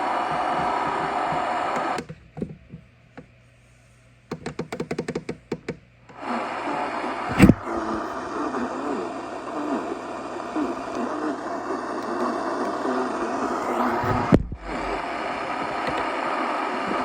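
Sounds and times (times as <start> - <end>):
radio static hiss: 6.2 - 17.0
loud thump: 7.3 - 8.1, 13.6 - 15.1
clicks: 7.3 - 8.2, 11.8 - 17.0.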